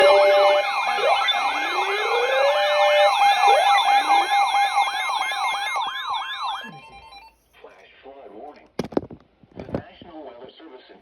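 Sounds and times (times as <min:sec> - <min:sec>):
rising siren wails: 0:00.0 - 0:07.3
electronic siren yelp: 0:00.0 - 0:07.4
steady siren tone: 0:00.0 - 0:07.4.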